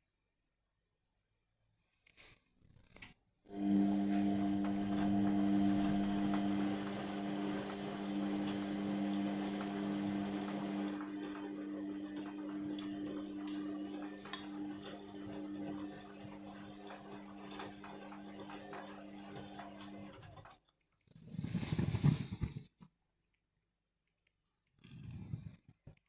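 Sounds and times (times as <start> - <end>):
washing machine motor hum: 3.5 - 20.6.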